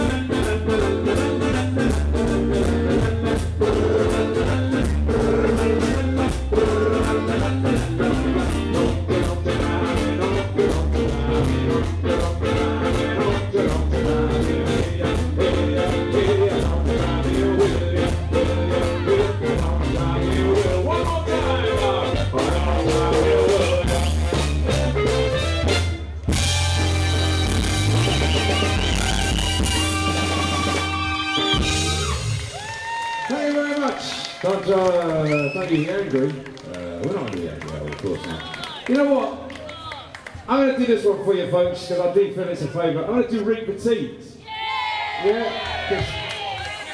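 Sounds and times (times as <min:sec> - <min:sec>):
upbeat instrumental music: 0:00.0 - 0:32.9.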